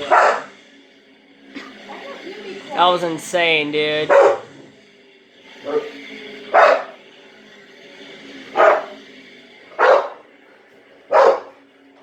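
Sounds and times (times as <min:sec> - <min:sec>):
dog barking: 0:00.0 - 0:00.5, 0:04.1 - 0:04.5, 0:06.5 - 0:07.0, 0:08.6 - 0:09.0, 0:09.8 - 0:10.2, 0:11.1 - 0:11.6.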